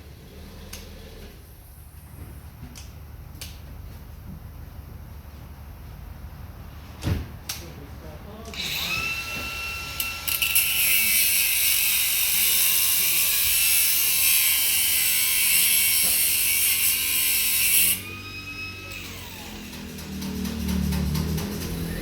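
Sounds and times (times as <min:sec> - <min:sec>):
power tool rattling and hissing: 0:08.5 - 0:18.2, 0:18.9 - 0:22.0
tool whine winding down: 0:08.5 - 0:22.0.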